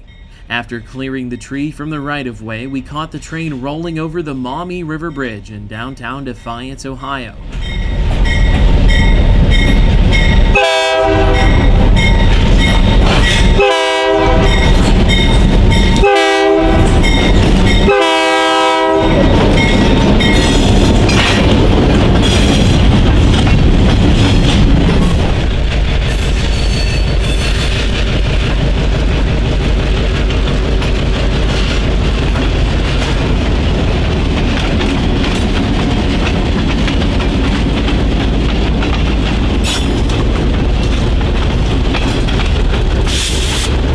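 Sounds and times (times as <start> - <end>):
freight train rumbling past: 0.0 - 43.9
diesel locomotive horn blasts: 10.5 - 12.1, 13.4 - 14.9, 15.8 - 19.7
wheels clacking over rail joints: 11.3 - 43.9.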